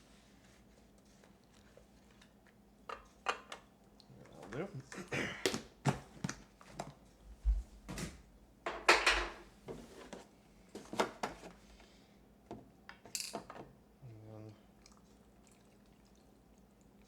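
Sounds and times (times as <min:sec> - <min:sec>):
kitchen items knocking and clunking: 0:07.9 - 0:10.1.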